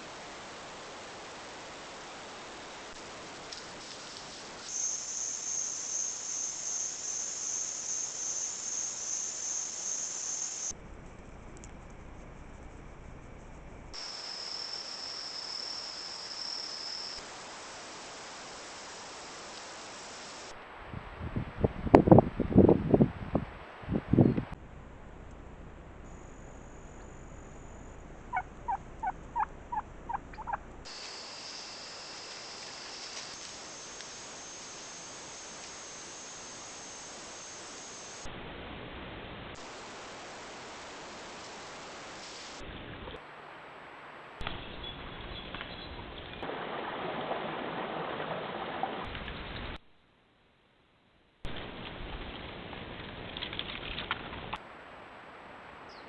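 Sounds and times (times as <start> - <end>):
faint outdoor hiss: 0.0 - 56.0
high-pitched insect trill: 3.8 - 20.5, 25.0 - 42.6
low rumble: 24.1 - 30.9.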